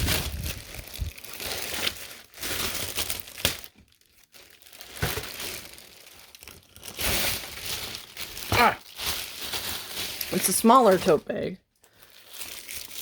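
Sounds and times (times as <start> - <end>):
packaging crinkling: 0.0 - 13.0.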